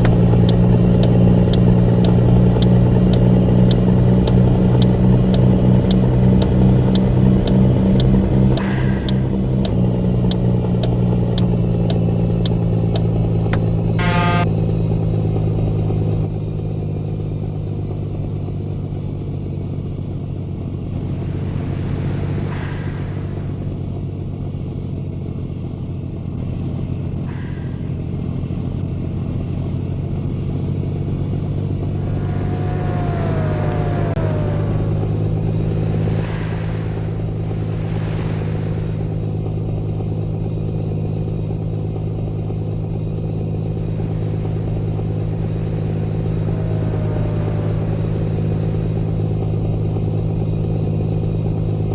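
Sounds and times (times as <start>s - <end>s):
regular ticking: 0.0s - 14.4s
truck engine droning: 0.0s - 51.9s
short tone: 14.0s - 14.5s.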